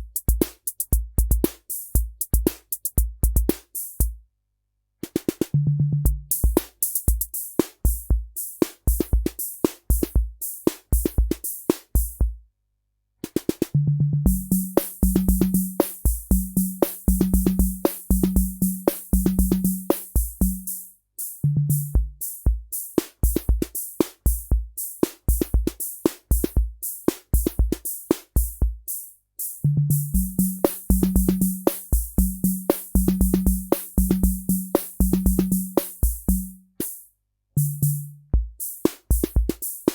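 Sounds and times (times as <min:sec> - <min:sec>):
drum machine rock rhythm: 0:00.0 - 0:04.2, 0:06.1 - 0:12.4, 0:14.3 - 0:39.9.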